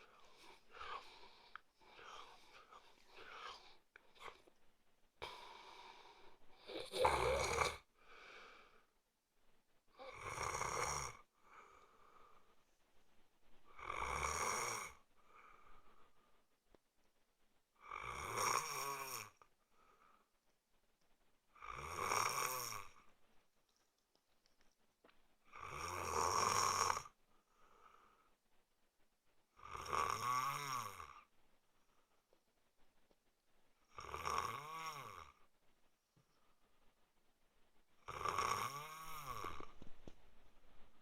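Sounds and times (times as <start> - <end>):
man snoring: 6.6 - 7.8, 10.0 - 11.3, 13.8 - 15.0, 17.8 - 19.4, 21.6 - 23.0, 25.5 - 27.1, 29.6 - 31.2, 33.9 - 35.4, 38.1 - 39.7.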